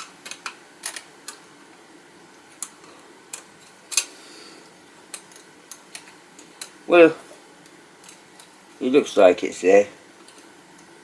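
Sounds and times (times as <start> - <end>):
small metal parts clicking: 0.0 - 1.4.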